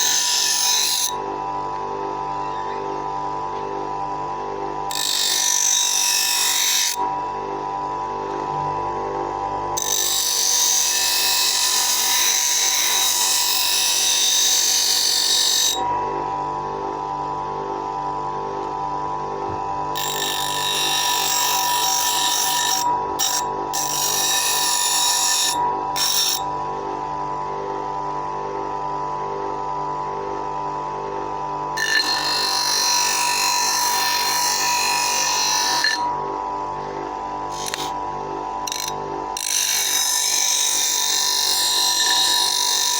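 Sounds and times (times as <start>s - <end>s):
bench grinder motor whine: 0.0s - 42.9s
blade grinding against wheel: 37.5s - 38.0s, 38.6s - 40.8s.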